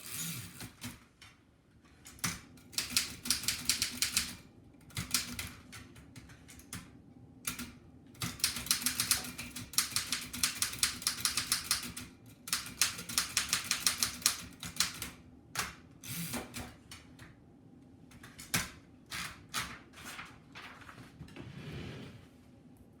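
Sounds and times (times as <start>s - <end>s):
typewriter keys clacking: 2.8s - 4.4s, 8.2s - 15.1s.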